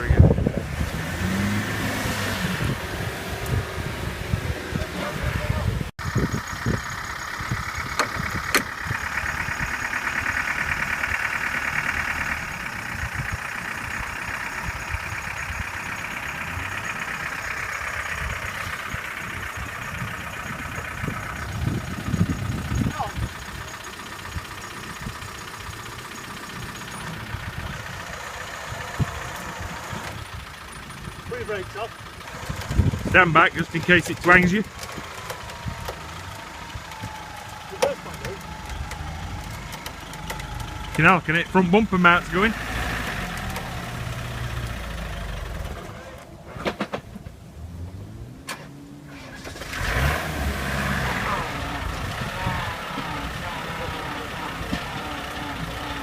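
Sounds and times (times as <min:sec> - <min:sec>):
diesel engine idling: 0:00.0 - 0:56.0
sharp clicks and knocks: 0:07.9 - 0:08.8, 0:37.7 - 0:41.1.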